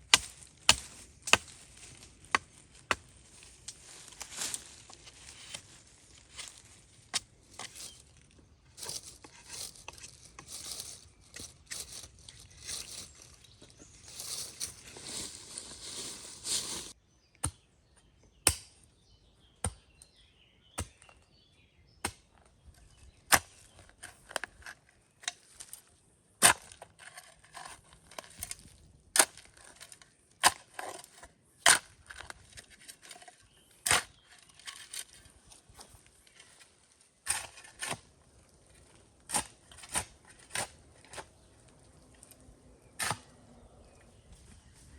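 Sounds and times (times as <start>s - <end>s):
branches rustling and crackling: 0.0s - 17.0s, 26.6s - 44.9s.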